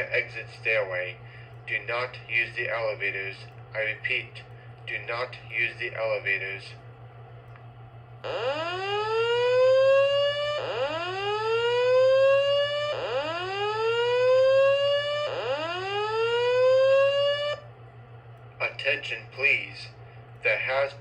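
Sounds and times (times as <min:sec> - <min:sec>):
whoop alarm tone: 0:08.3 - 0:17.6.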